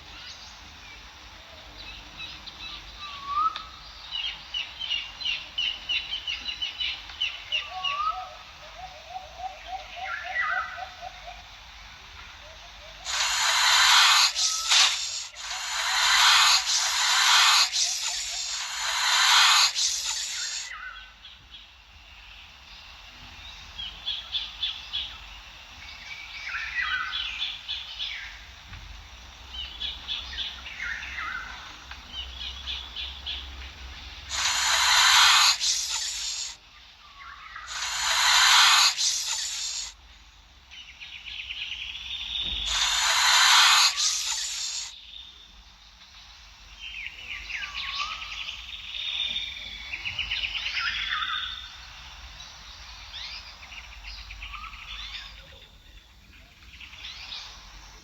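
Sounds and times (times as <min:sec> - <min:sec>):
birds chirping: 0:12.4 - 0:21.0, 0:29.6 - 0:36.6, 0:37.2 - 0:58.0
cobra hissing: 0:12.5 - 0:21.0, 0:34.2 - 0:36.6, 0:37.5 - 0:40.0, 0:42.2 - 0:45.2.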